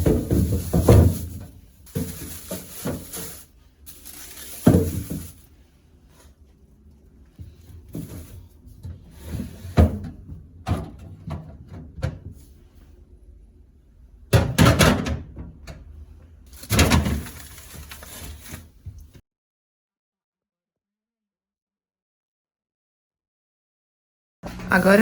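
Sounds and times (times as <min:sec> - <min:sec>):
kitchen items clattering: 0:00.0 - 0:05.5, 0:16.5 - 0:19.0.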